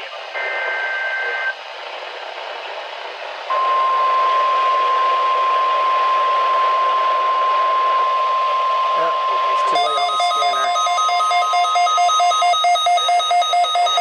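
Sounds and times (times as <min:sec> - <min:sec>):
radio static hiss: 0:00.0 - 0:10.8
single-pitch warning alarm tone: 0:03.5 - 0:14.0
two-tone data screech: 0:08.8 - 0:14.0.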